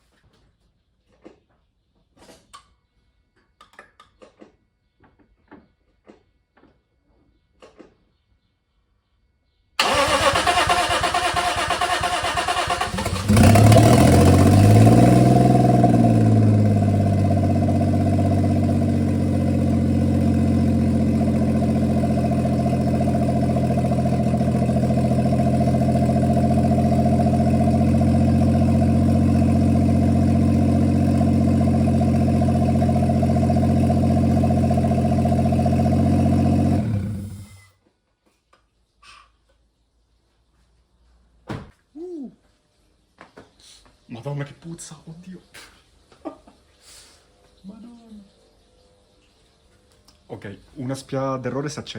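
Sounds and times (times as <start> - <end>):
engine cranking on starter: 9.8 - 17.2, 34.3 - 37.7
car engine idling: 9.8 - 37.6.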